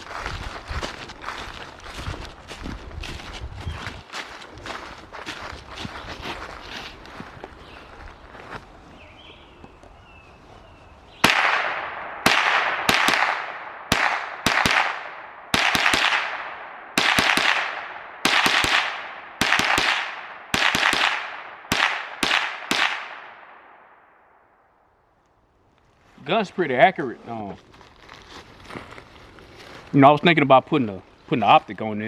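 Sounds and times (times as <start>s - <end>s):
rifle shots: 11.2s - 24.0s.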